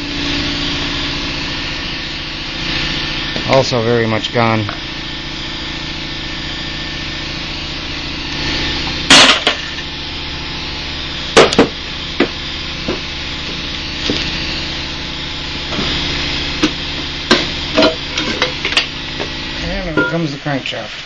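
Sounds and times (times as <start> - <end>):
steady hum: 0.0 - 21.0
loud clatter: 9.1 - 9.8
tools and engine parts clanking: 9.1 - 9.9, 16.6 - 19.3, 19.9 - 20.3.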